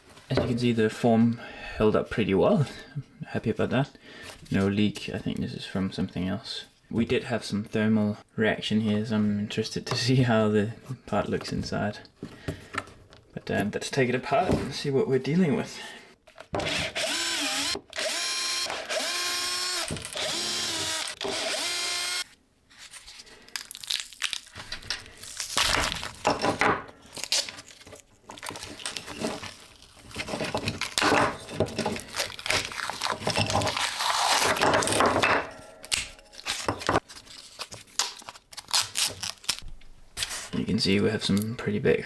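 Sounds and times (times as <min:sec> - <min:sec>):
power drill running: 0:16.6 - 0:22.3.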